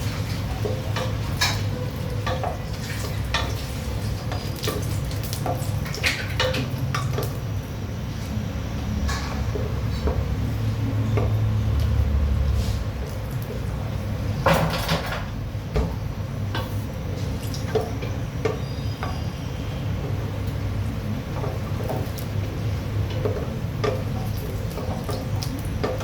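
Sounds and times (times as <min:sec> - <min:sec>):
pots and dishes clattering: 0:00.0 - 0:07.4, 0:09.0 - 0:10.3, 0:14.4 - 0:15.9, 0:23.1 - 0:26.0.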